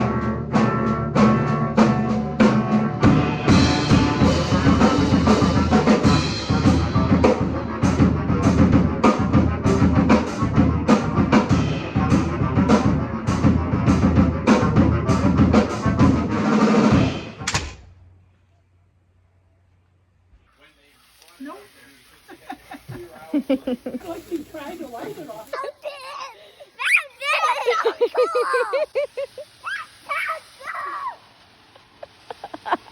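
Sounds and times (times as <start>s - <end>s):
fast driving drum hits: 0.0s - 17.8s.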